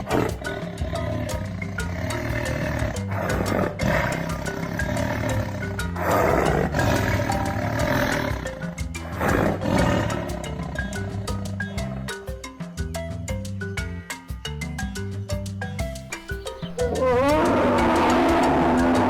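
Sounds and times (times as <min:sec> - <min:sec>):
big cat roaring: 0:00.0 - 0:08.5, 0:09.1 - 0:11.3, 0:17.0 - 0:19.0
background music with a beat: 0:00.0 - 0:19.0.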